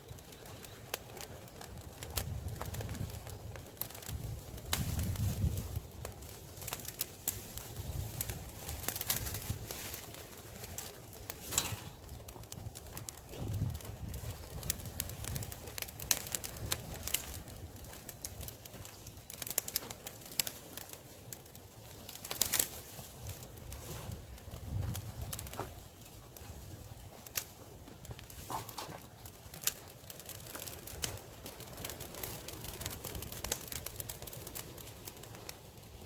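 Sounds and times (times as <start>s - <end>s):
campfire crackling and popping: 0.0s - 36.0s
sharp wood snaps: 8.1s - 21.0s, 22.1s - 23.4s.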